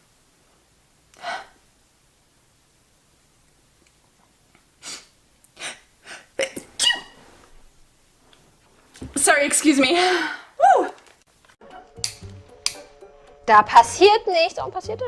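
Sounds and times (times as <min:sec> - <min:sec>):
person sneezing: 0:04.8 - 0:07.2.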